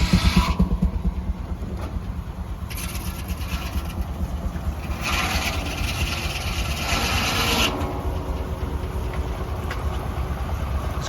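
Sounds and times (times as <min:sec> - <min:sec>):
saw blade cutting through log: 0:00.0 - 0:00.6, 0:04.8 - 0:07.9
steam engine low rumble: 0:00.0 - 0:11.0.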